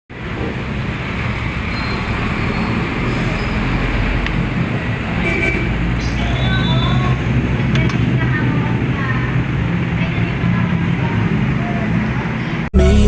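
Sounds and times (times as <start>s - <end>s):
road traffic noise: 0.1s - 13.0s.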